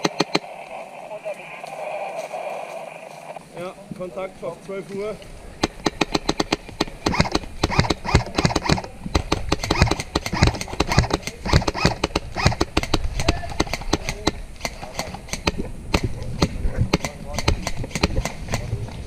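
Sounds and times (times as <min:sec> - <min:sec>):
airsoft guns firing: 0:00.0 - 0:00.9, 0:05.6 - 0:18.7.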